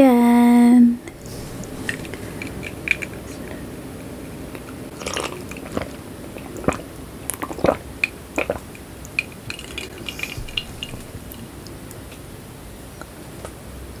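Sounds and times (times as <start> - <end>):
wet chewing sounds: 1.1 - 3.6, 4.5 - 12.2
mouth smacks and clicks: 4.6 - 12.2.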